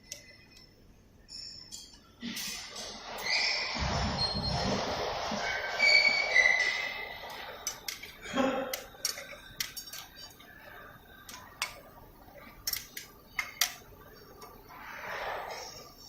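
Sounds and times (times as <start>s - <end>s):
welding machine metallic clicks: 6.6s - 14.8s.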